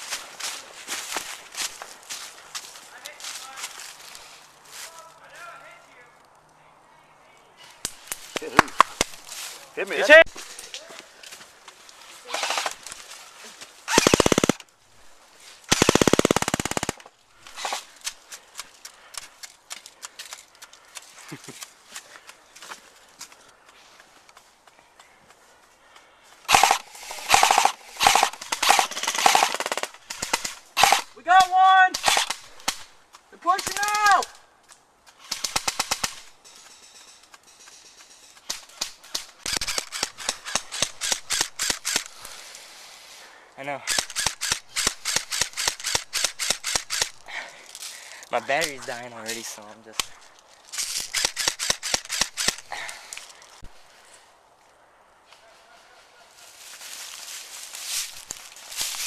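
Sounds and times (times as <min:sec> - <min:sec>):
airsoft gun full-auto bursts: 0:12.3 - 0:12.8, 0:13.9 - 0:14.6, 0:15.7 - 0:17.0, 0:26.5 - 0:31.1, 0:32.0 - 0:32.8, 0:35.3 - 0:36.3, 0:39.2 - 0:42.1, 0:43.9 - 0:47.2, 0:50.8 - 0:52.7.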